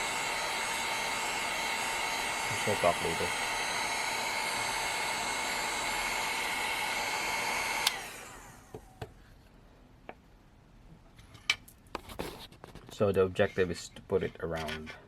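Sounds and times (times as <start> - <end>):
hot-air blower whining: 0.0 - 9.2
blower switch click: 7.8 - 8.1.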